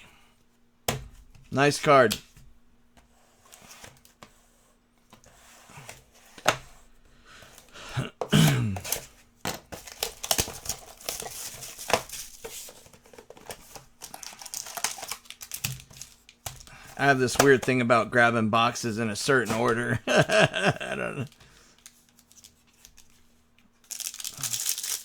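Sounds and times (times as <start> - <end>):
plastic wrapping crinkling: 9.8 - 17.6, 23.8 - 25.0.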